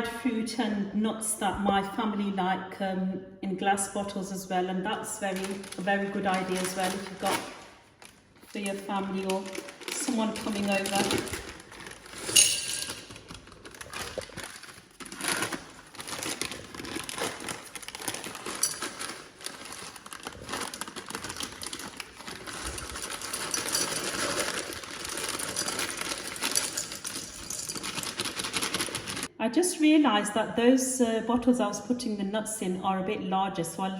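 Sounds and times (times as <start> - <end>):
nuts rattling into glass bottles: 9.4 - 29.3.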